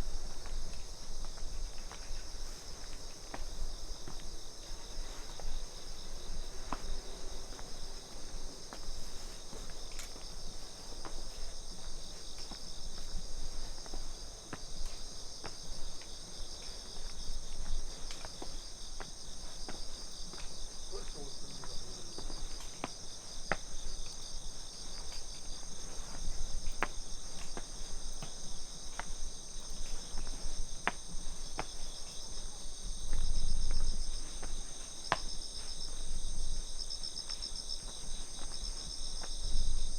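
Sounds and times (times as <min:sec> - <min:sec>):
crickets and insects singing: 0:00.0 - 0:39.9
footstep taps: 0:33.1 - 0:35.7.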